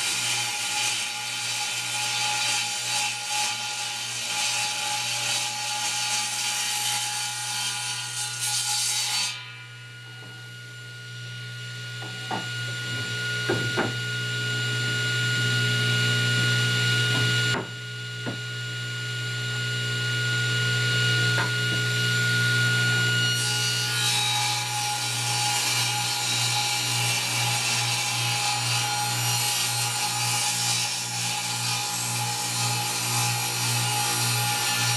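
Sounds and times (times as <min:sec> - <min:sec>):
saw blade cutting wood: 0:23.0 - 0:34.9.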